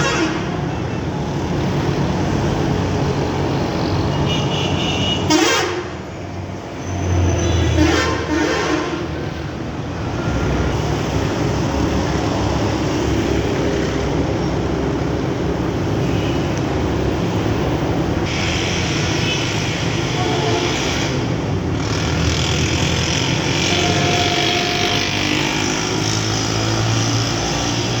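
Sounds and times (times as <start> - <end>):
road noise: 0.0 - 28.0
bus engine running: 16.6 - 28.0.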